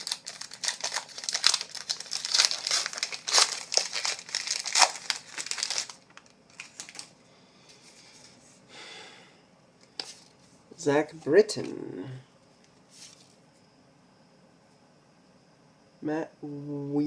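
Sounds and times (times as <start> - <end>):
wrapper crinkling and tearing: 0.0 - 7.2.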